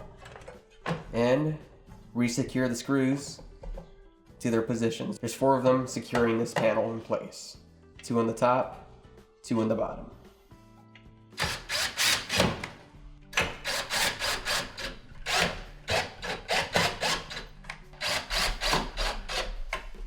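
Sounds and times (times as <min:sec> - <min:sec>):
screwdriver driving screws into metal: 0:11.4 - 0:12.7, 0:13.4 - 0:19.8.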